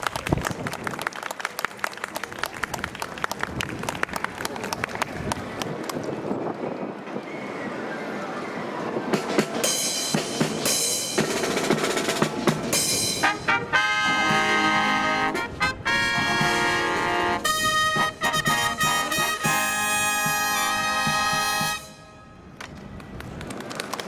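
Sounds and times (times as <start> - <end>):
drum strokes: 9.2 - 22.0
marching brass band fanfare: 9.3 - 22.5.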